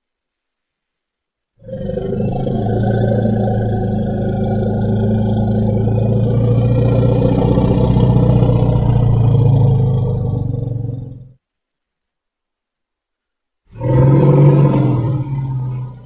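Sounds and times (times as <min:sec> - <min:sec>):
woolly mammoth call: 0:13.7 - 0:16.0.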